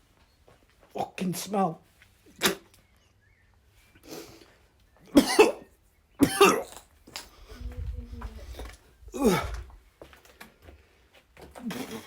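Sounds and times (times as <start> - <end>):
person coughing and gagging: 5.2 - 5.6, 6.2 - 6.8, 9.1 - 9.7.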